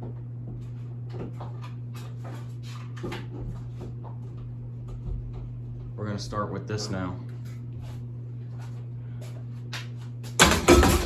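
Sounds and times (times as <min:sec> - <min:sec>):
steady low hum: 0:00.0 - 0:11.0
tools knocking and clattering: 0:10.4 - 0:11.0.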